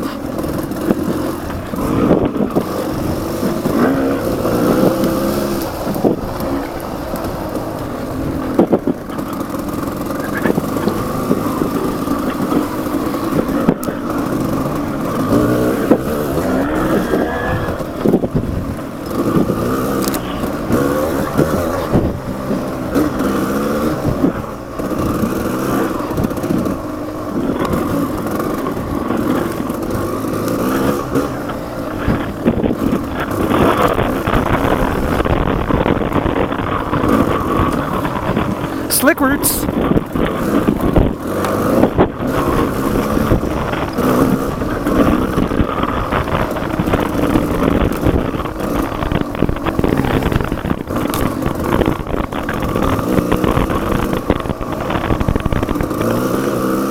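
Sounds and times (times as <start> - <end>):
motorcycle knocking on bumps: 0.0 - 38.8, 39.7 - 56.9
motorcycle engine revving: 0.0 - 56.9.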